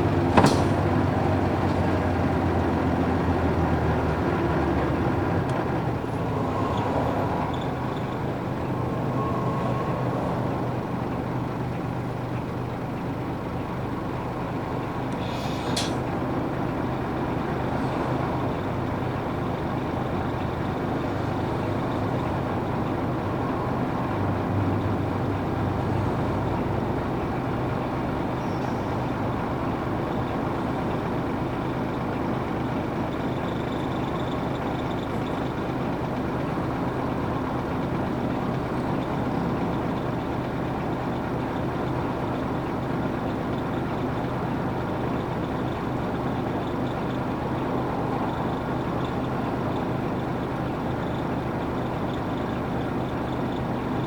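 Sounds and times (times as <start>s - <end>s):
bus diesel engine running: 0.0s - 54.0s
air brake hiss: 0.4s - 0.9s, 15.2s - 16.1s.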